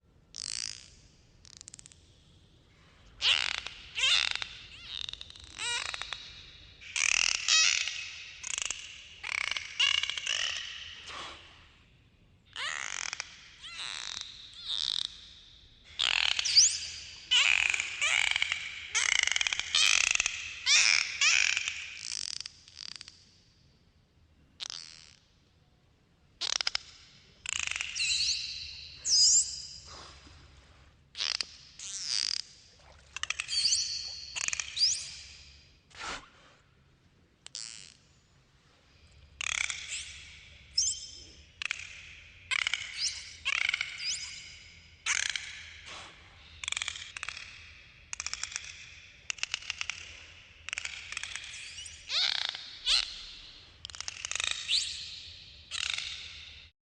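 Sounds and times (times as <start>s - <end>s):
dolphins squawking underwater: 3.2s - 11.2s, 17.2s - 21.6s
dolphin clicking: 3.2s - 11.5s, 31.2s - 35.6s, 41.6s - 56.6s
dolphin whistles: 3.2s - 11.5s, 12.6s - 21.6s, 42.5s - 48.7s, 49.3s - 56.5s.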